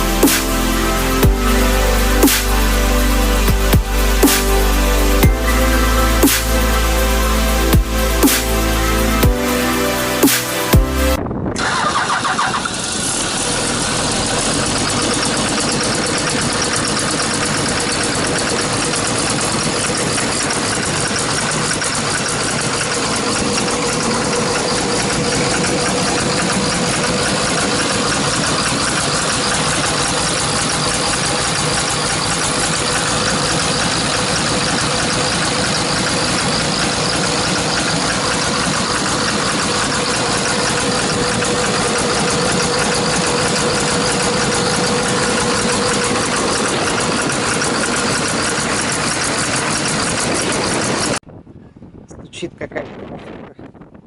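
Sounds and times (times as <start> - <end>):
diesel engine running: 0.0 - 51.2
engine knocking: 11.6 - 51.2
engine starter cranking: 11.6 - 51.2.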